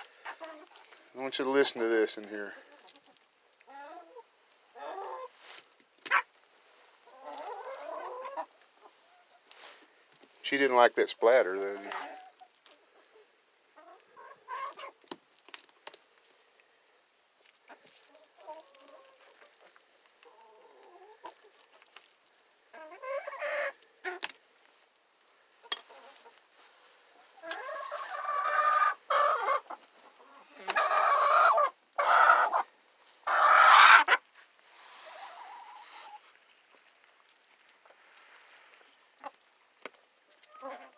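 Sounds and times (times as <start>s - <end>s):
hens clucking softly: 0.0s - 9.8s, 11.4s - 15.0s, 17.4s - 24.3s, 25.5s - 39.6s, 40.2s - 40.9s
hen loud drawn-out calls: 27.4s - 29.8s, 30.5s - 34.2s.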